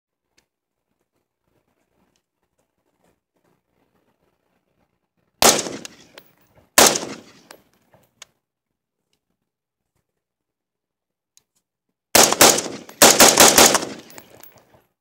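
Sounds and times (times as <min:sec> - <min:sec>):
rifle shots with echo: 0:05.4 - 0:06.1, 0:06.8 - 0:07.5, 0:12.2 - 0:14.3.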